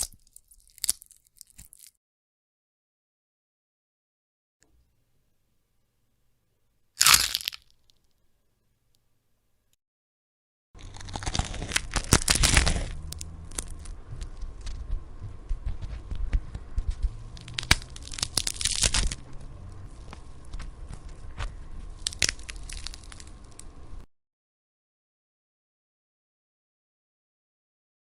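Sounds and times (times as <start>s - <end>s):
bones crunching and cracking: 0.0s - 2.0s, 7.0s - 8.0s, 10.8s - 14.8s, 15.8s - 23.8s
low rumble: 10.8s - 24.1s.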